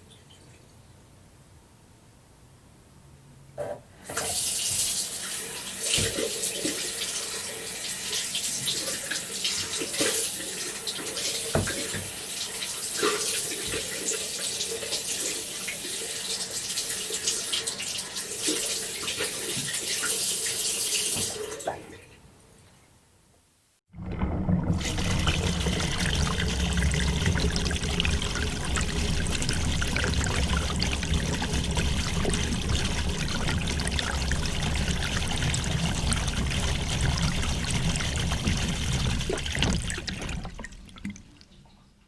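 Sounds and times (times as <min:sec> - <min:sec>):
tap running into a sink: 0:05.8 - 0:06.8, 0:10.9 - 0:12.2, 0:24.0 - 0:41.2
hands washing with splashes: 0:24.8 - 0:41.6.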